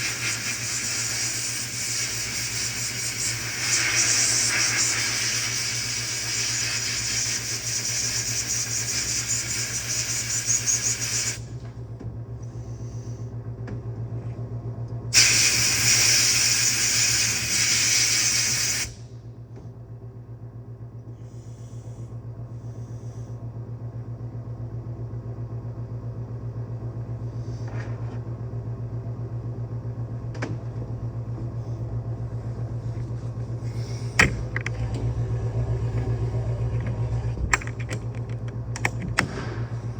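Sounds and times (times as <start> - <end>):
pressurised spray hissing: 0.0 - 11.5, 15.2 - 19.0
steady low hum: 0.0 - 39.9.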